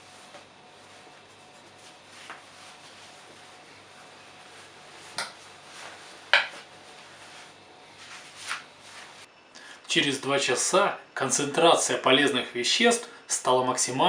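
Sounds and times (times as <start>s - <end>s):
faint steady hum: 0.0s - 14.0s
kitchenware knocks and clinks: 6.4s - 6.6s.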